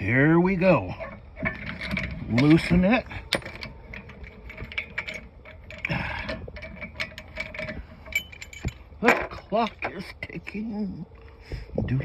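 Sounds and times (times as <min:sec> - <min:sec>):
metal brake parts clicking: 0:01.4 - 0:10.0.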